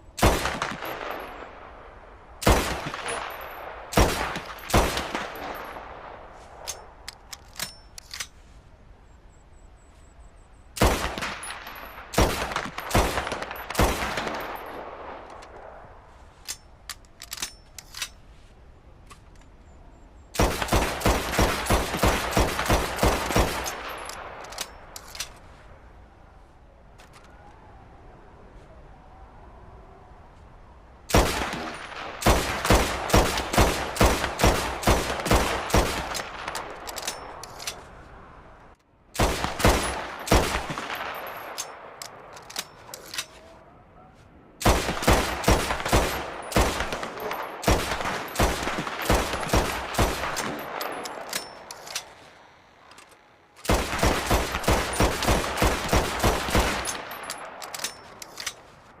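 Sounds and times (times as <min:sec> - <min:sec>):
pistol firing rapid shots: 0:03.9 - 0:05.4, 0:20.4 - 0:23.8, 0:31.1 - 0:36.6, 0:39.2 - 0:41.1, 0:44.6 - 0:51.3, 0:53.6 - 0:57.1.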